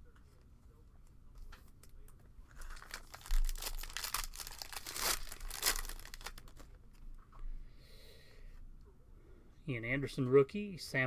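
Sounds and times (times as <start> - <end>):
wrapper tearing and crumpling: 2.6 - 6.7.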